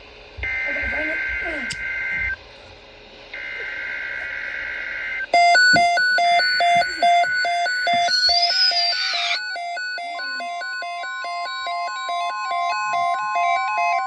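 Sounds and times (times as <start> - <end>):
high whine: 0.0 - 14.0
rapid electronic beeping alert tone: 3.4 - 14.0
two-tone digital data screech: 3.4 - 14.0.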